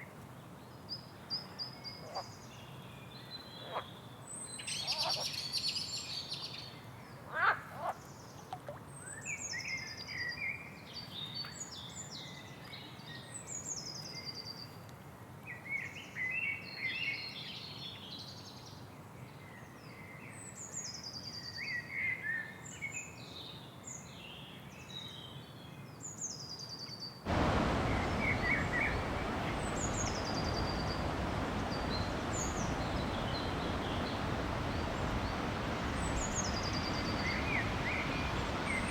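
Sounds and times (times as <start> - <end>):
faint hiss: 27.3 - 38.9
loud rushing hiss: 27.3 - 38.9
birds chattering: 27.7 - 38.9.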